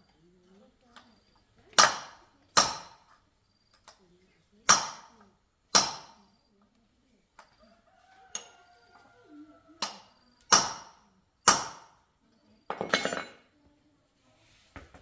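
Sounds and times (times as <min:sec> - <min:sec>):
metal tools knocking on workbench: 0:12.7 - 0:13.5.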